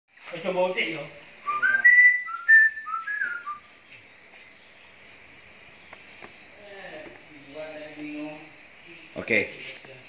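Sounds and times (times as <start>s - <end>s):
faint high hiss: 0.2s - 10.0s
whistled notes: 1.4s - 3.7s.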